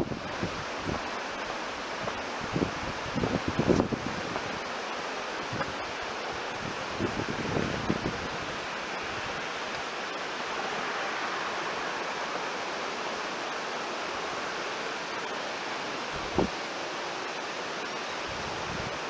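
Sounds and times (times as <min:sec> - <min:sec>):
wind on microphone: 0:00.0 - 0:01.2, 0:01.8 - 0:04.7, 0:05.4 - 0:09.8, 0:16.1 - 0:16.6, 0:18.2 - 0:19.0
river water flowing: 0:00.0 - 0:19.0.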